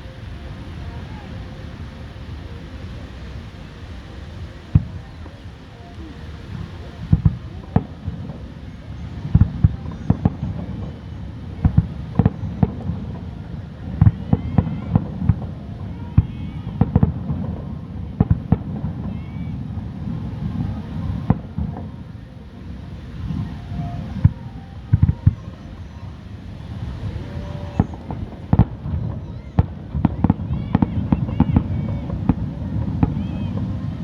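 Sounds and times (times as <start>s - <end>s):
low rumble of fireworks display: 0.0s - 34.0s
fireworks shells bursting: 22.9s - 34.0s.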